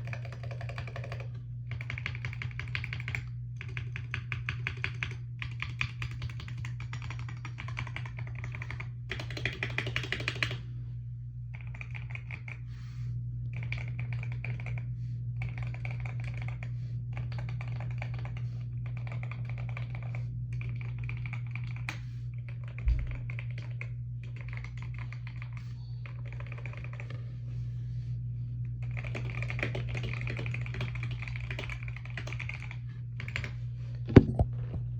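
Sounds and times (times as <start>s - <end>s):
steady low hum: 0.0s - 34.9s
low thump: 22.9s - 23.3s.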